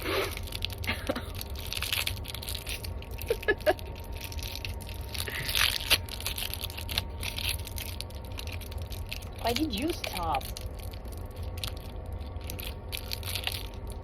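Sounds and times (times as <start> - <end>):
person breathing noises: 0.0 - 1.3, 5.2 - 6.0
vehicle rumble: 0.0 - 14.0.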